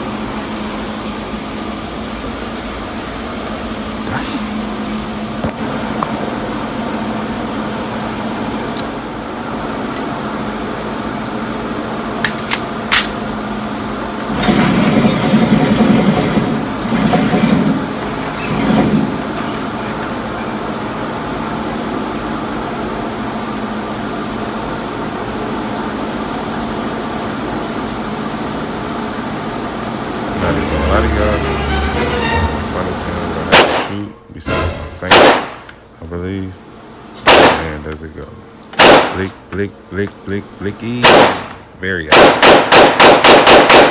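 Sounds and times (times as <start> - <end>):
ventilation fans humming: 0.0 - 43.8
rough noise: 30.2 - 35.1.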